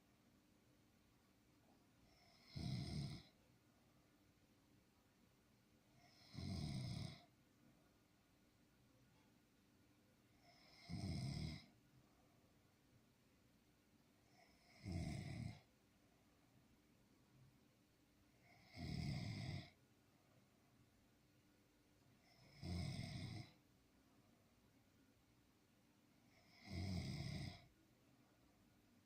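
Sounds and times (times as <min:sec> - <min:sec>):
person snoring: 0:02.0 - 0:03.4, 0:06.0 - 0:07.3, 0:10.4 - 0:11.7, 0:14.3 - 0:15.7, 0:18.4 - 0:19.8, 0:22.2 - 0:23.6, 0:26.3 - 0:27.7.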